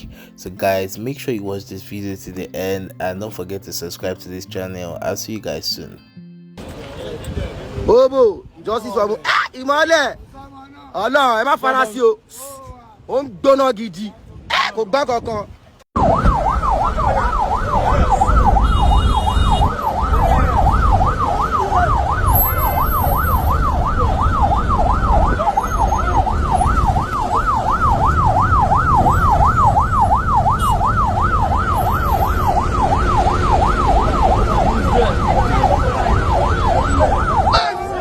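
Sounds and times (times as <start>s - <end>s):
siren yelping: 9.2s - 9.6s, 16.0s - 38.0s.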